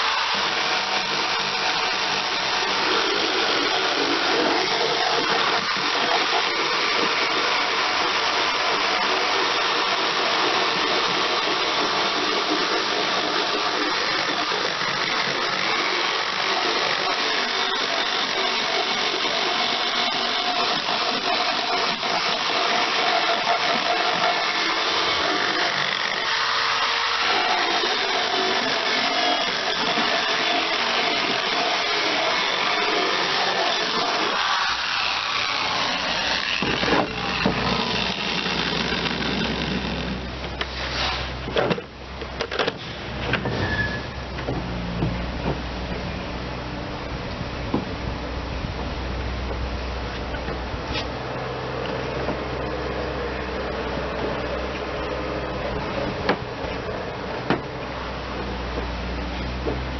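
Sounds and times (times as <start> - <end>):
power tool motor whine: 0.0 - 41.5.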